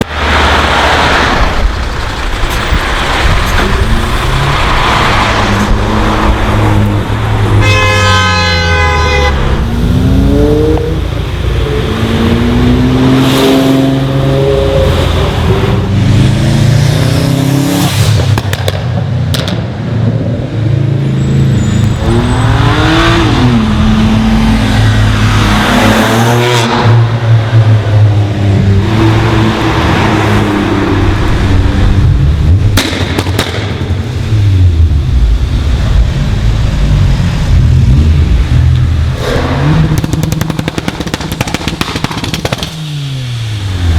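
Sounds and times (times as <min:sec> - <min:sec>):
car engines revving: 0:00.0 - 0:43.9
car horn: 0:07.4 - 0:11.0.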